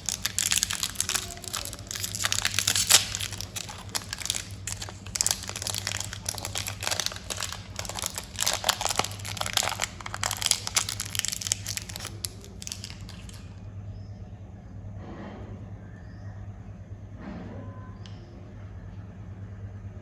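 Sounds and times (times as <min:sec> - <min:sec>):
wrappers crinkling and tearing: 0:00.0 - 0:13.5.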